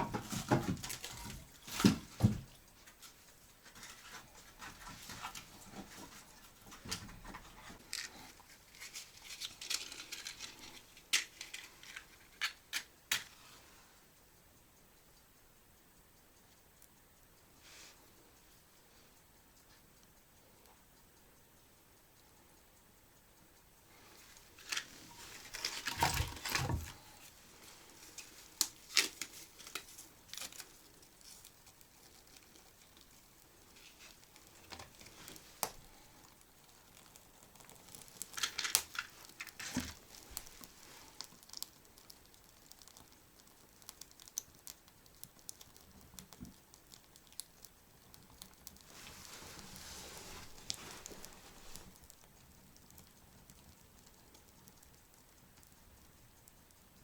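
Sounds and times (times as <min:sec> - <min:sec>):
rustling and crinkling: 0:00.0 - 0:13.8, 0:23.9 - 0:44.4, 0:45.4 - 0:53.7
soft hiss: 0:00.0 - 0:57.0
sharp clicks and knocks: 0:23.9 - 0:57.0.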